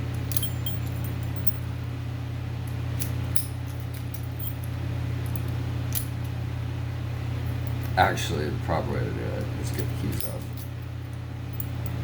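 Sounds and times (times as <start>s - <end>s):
padlock and keys jingling: 0.0s - 1.8s, 2.7s - 6.3s, 7.4s - 8.0s, 9.4s - 12.0s
electric fans humming: 0.0s - 12.0s.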